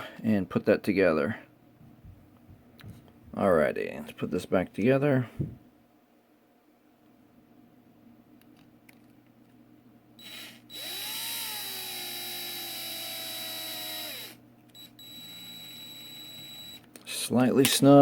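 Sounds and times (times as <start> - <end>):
power drill driving screws: 10.2 - 16.8.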